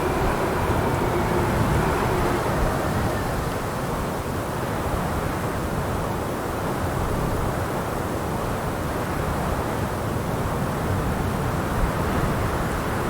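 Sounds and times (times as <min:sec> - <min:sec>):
low wind rushing: 0:00.0 - 0:04.6.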